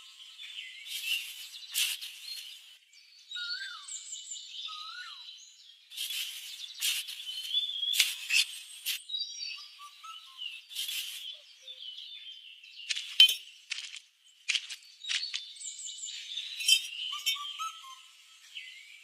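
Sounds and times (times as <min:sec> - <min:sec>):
faint birds chirping: 0:00.0 - 0:19.0
small hard pieces clinking: 0:12.9 - 0:15.5, 0:16.6 - 0:17.4.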